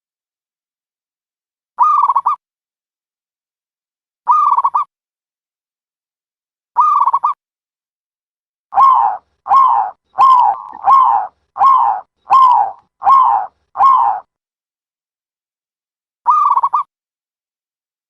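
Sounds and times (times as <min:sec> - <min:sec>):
dove calling: 0:08.8 - 0:14.3
trilled bird call: 0:08.8 - 0:14.3.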